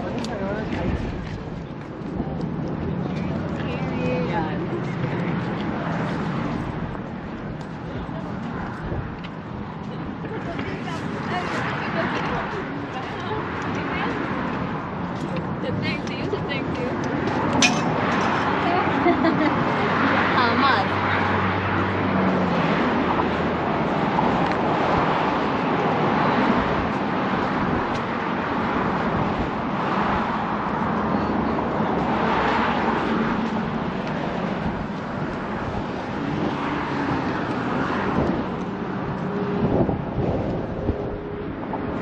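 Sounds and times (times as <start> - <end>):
wind on microphone: 0.0 - 20.3, 20.9 - 42.0
road traffic rushing: 0.0 - 42.0.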